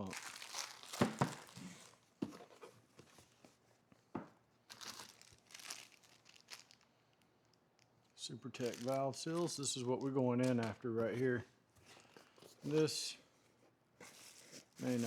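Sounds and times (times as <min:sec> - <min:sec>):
plastic crinkling: 0:00.0 - 0:02.6, 0:04.6 - 0:10.8, 0:14.1 - 0:15.0
cardboard rustling: 0:00.0 - 0:03.7, 0:08.6 - 0:11.2, 0:14.0 - 0:15.0.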